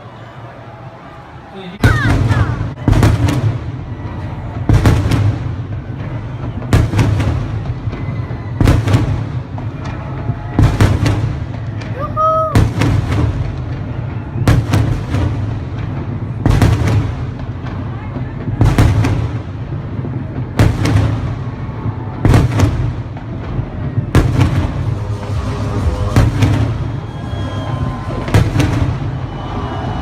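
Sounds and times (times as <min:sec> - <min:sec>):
fireworks bangs: 0:00.0 - 0:30.0
low rumble: 0:22.8 - 0:30.0.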